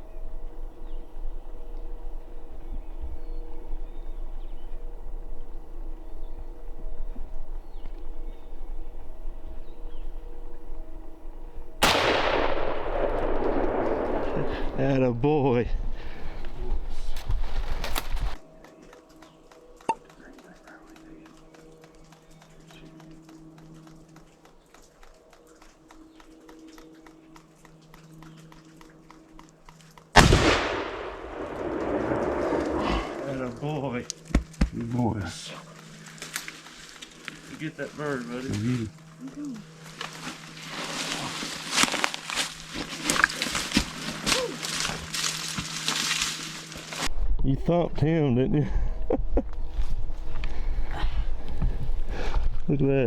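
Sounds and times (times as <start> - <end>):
shotgun shot with long echo: 11.8 - 14.8, 30.2 - 33.6.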